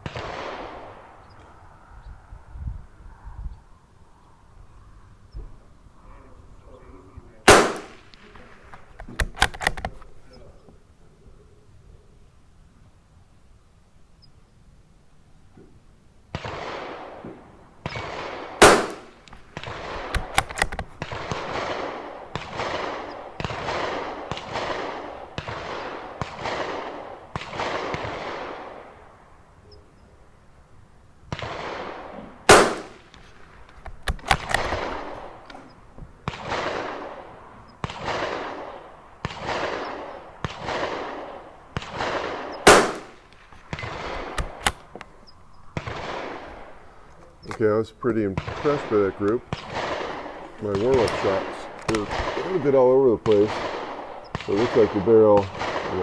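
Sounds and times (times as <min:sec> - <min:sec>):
rifle shot crack: 0:00.0 - 0:01.8, 0:06.1 - 0:10.5, 0:16.3 - 0:30.2, 0:31.2 - 0:56.0
distant echoing gunshots: 0:00.0 - 0:02.4, 0:04.7 - 0:10.6, 0:15.5 - 0:56.0
rifle bolt clicks: 0:07.5 - 0:10.3, 0:18.6 - 0:21.7, 0:32.5 - 0:35.7, 0:42.5 - 0:52.4.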